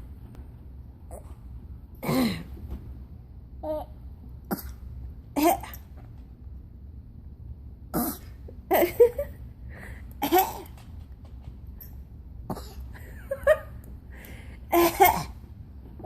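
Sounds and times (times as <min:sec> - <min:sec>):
person coughing: 0:02.0 - 0:02.6, 0:10.2 - 0:10.7, 0:12.5 - 0:13.0, 0:14.7 - 0:15.4.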